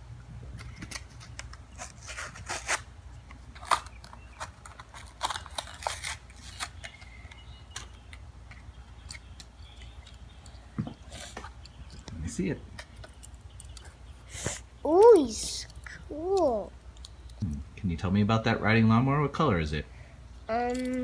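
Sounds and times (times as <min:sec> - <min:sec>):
plastic package being torn open: 0:03.6 - 0:07.0.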